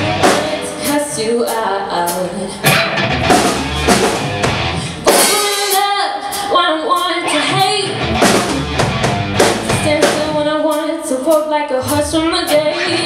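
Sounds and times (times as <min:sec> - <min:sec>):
live rock band playing: 0:00.0 - 0:13.0
loud drum hit: 0:02.7 - 0:05.8, 0:08.0 - 0:10.3.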